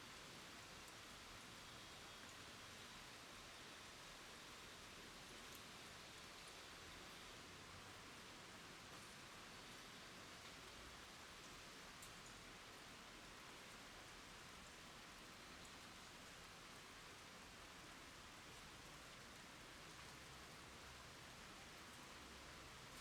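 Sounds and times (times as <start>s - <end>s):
soft water drop ticks: 11.5s - 12.4s.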